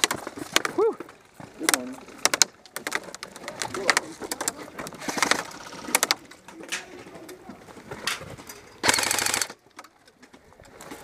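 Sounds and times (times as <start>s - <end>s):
airsoft gun automatic burst: 8.8s - 9.6s.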